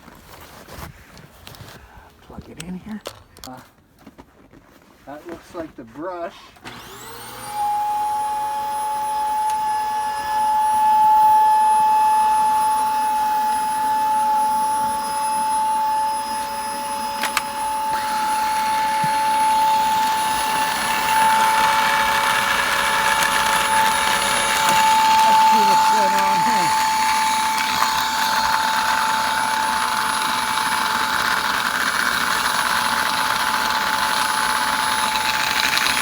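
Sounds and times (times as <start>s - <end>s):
vacuum cleaner motor whine: 6.6s - 36.0s
rough grinding noise: 16.2s - 36.0s.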